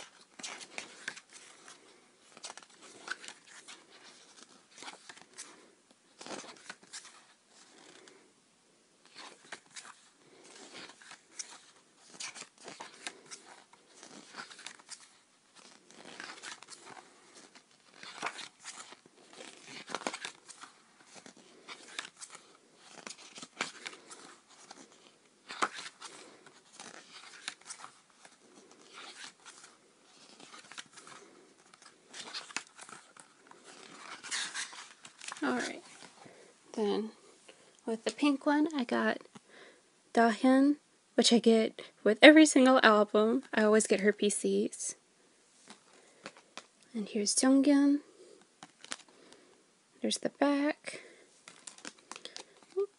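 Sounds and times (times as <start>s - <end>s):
paper and plastic packaging rustling: 0.0s - 8.2s, 9.1s - 38.9s, 48.2s - 49.5s, 50.9s - 52.9s.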